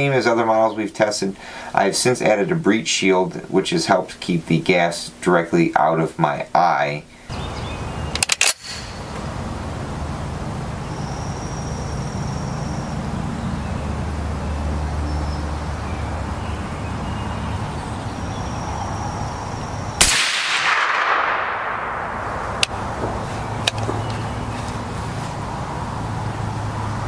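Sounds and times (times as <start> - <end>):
suppressed rifle shot with echo: 20.0 - 24.0.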